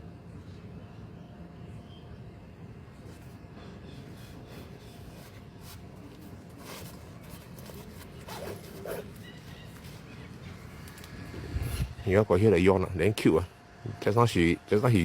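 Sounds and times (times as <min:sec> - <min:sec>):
scratchy rustle: 0:04.0 - 0:11.0.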